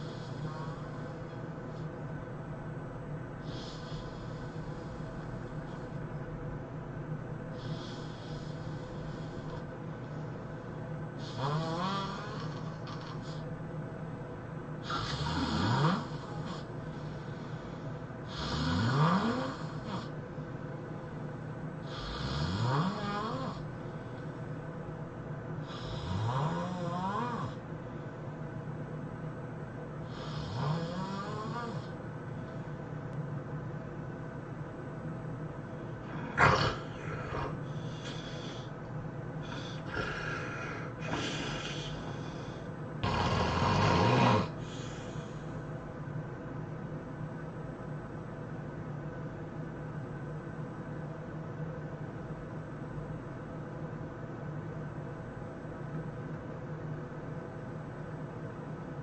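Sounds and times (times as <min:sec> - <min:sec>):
person snoring heavily: 0:00.0 - 0:01.2, 0:07.6 - 0:09.6, 0:11.2 - 0:13.4, 0:14.8 - 0:17.6, 0:18.2 - 0:20.1, 0:21.8 - 0:23.6, 0:25.6 - 0:27.6, 0:30.1 - 0:32.0, 0:36.0 - 0:38.7, 0:39.4 - 0:45.4
sharp snort: 0:36.1 - 0:38.6, 0:39.5 - 0:42.2, 0:43.0 - 0:45.0.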